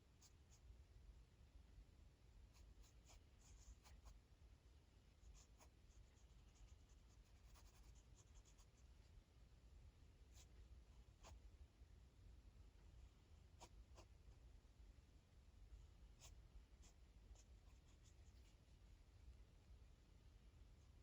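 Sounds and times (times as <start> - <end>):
low background hum: 0.0 - 21.0.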